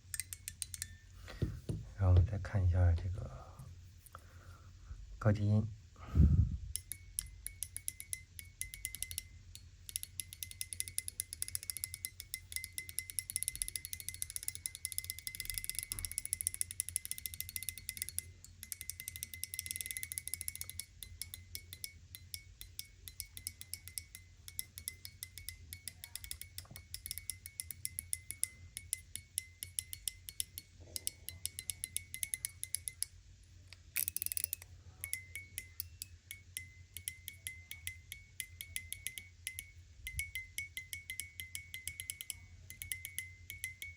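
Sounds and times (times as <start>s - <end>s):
fidget slider metallic clicks: 33.7s - 36.1s.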